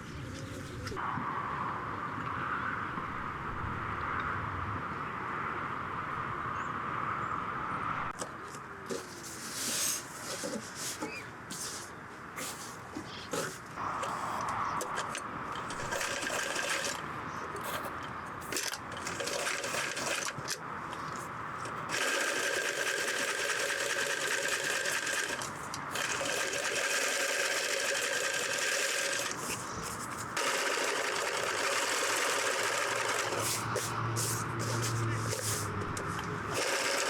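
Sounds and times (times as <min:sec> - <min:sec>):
electric sewing machine stitching: 0:15.6 - 0:17.0, 0:18.5 - 0:20.5, 0:21.9 - 0:29.6, 0:30.4 - 0:33.7, 0:36.5 - 0:37.0.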